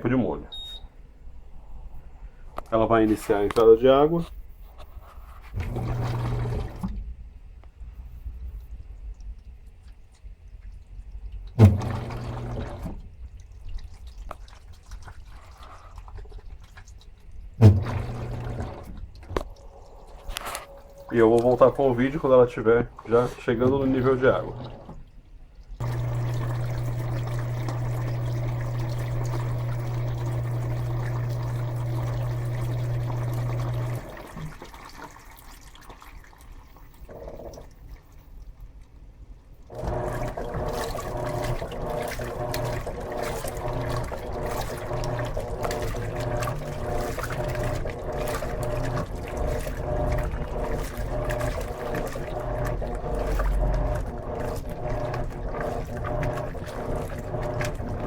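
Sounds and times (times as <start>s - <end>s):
washing machine low hum: 0.0s - 2.1s, 2.8s - 38.2s, 39.6s - 58.0s
water churning in tub: 5.4s - 7.6s, 8.3s - 58.0s
water pouring into tub: 5.5s - 7.0s, 9.8s - 38.5s, 39.6s - 58.0s.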